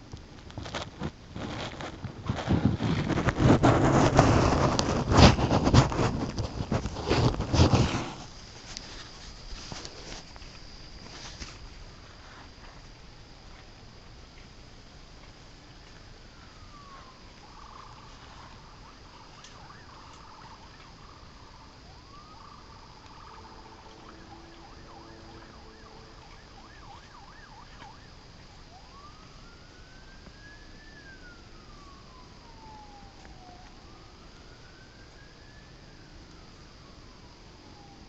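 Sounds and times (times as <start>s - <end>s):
distant emergency siren wailing: 15.0s - 38.0s.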